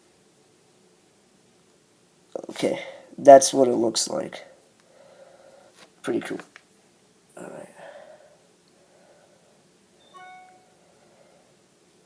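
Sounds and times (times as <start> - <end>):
faint room hiss: 0.0 - 12.0
electronic alert chime: 10.0 - 10.8.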